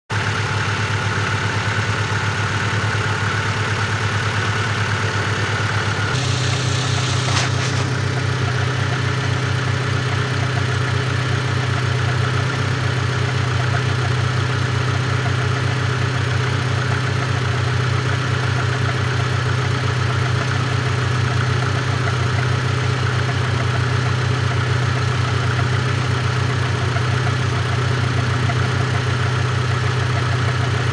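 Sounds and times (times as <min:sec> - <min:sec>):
knocking engine idling: 0:00.2 - 0:30.9
steady high whine: 0:06.1 - 0:09.2.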